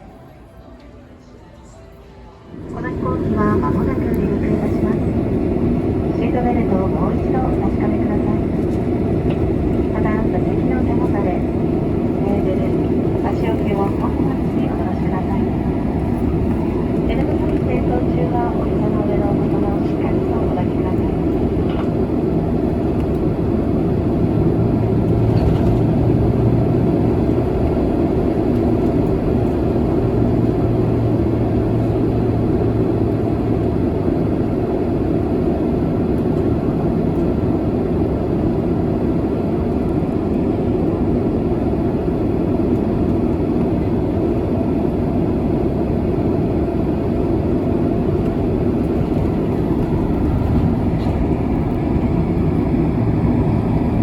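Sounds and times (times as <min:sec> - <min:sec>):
jet engines running: 0:02.3 - 0:54.0.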